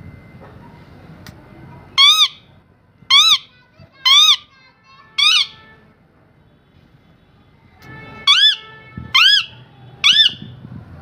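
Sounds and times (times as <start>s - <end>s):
parrot squawking: 2.0s - 2.5s, 3.1s - 4.5s, 5.2s - 5.6s, 8.3s - 10.4s.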